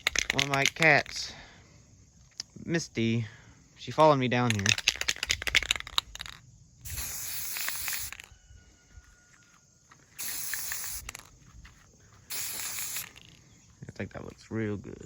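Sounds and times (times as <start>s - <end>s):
spray can rattling: 0.0s - 1.2s, 4.5s - 8.3s, 10.2s - 11.3s, 12.3s - 13.4s
spray can hissing: 6.8s - 8.3s, 10.2s - 11.3s, 12.2s - 13.4s.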